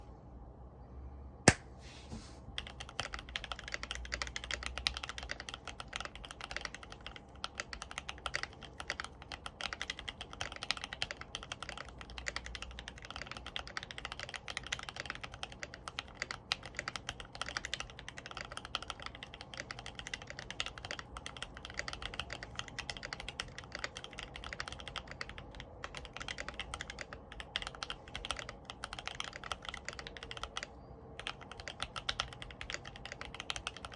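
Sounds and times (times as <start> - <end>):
loud click: 1.5 - 1.7
mechanical keyboard typing: 2.6 - 33.9.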